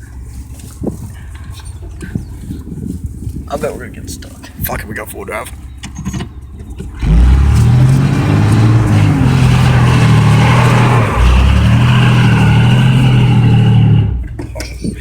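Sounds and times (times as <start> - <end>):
engine revving hard: 7.0 - 14.3.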